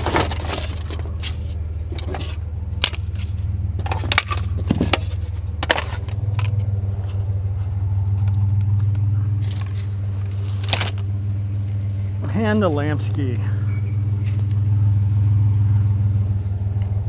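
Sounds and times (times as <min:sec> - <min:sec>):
scrap metal clanking: 0:00.0 - 0:07.2
truck engine idling: 0:00.0 - 0:17.0.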